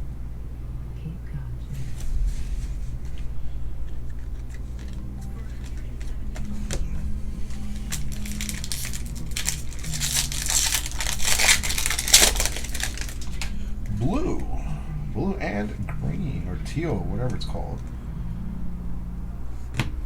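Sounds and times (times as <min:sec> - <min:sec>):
quiet background music: 0:00.0 - 0:20.0
plastic wrapper crinkling: 0:02.0 - 0:13.9.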